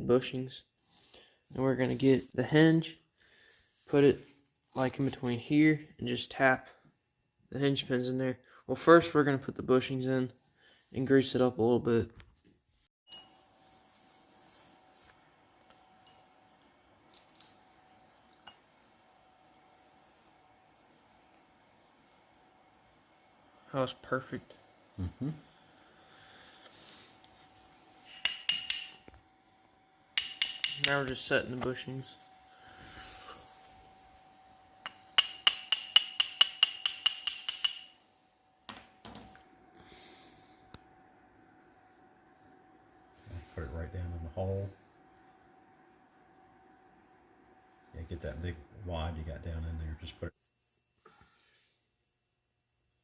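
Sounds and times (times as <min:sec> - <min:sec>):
hammer striking metal: 0:28.0 - 0:29.1, 0:30.2 - 0:31.3, 0:34.8 - 0:38.0.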